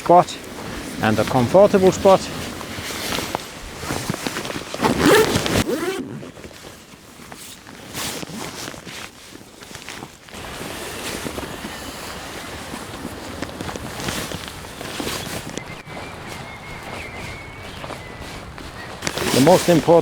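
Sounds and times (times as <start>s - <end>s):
wind: 0.0s - 20.0s
rustling and handling: 0.1s - 20.0s
surf: 10.4s - 20.0s.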